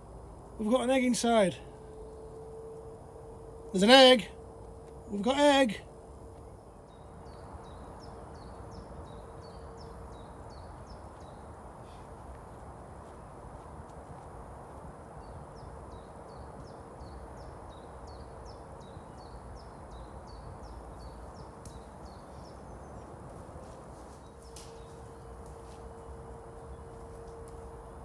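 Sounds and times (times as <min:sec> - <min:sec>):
outdoor background noise: 0:00.0 - 0:28.0
songbird singing high notes: 0:03.6 - 0:04.4.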